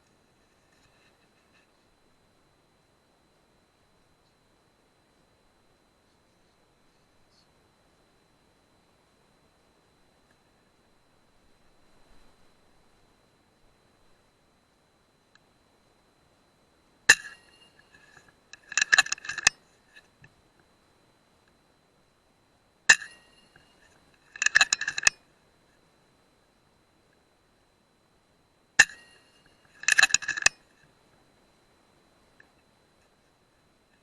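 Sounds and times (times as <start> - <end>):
metallic clicks of rifle action: 17.1 - 19.6, 22.9 - 25.2, 28.8 - 30.6.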